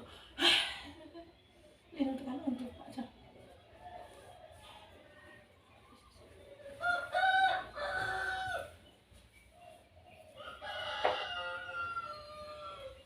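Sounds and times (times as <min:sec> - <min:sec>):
rooster crowing: 0:06.8 - 0:08.8, 0:10.4 - 0:13.0.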